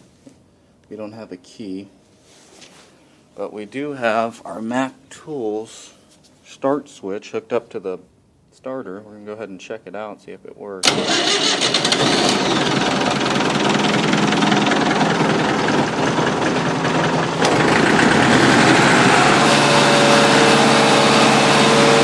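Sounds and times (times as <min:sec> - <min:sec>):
diesel engine cranking and idling: 0:10.8 - 0:22.0.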